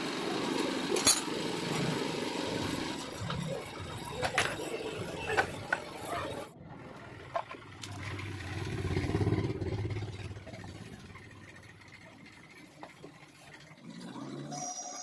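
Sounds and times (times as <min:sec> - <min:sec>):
vehicle engine passing: 0:06.5 - 0:12.7.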